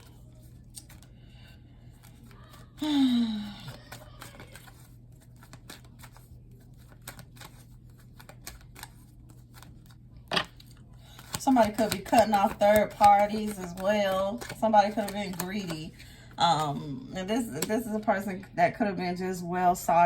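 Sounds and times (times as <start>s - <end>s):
cards being shuffled: 0.0s - 1.2s, 3.5s - 16.7s.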